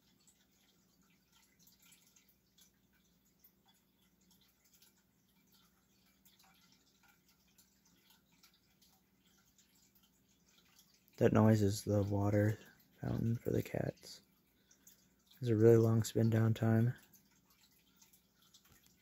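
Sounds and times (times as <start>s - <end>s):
water fountain trickling and dripping: 0.0s - 19.0s.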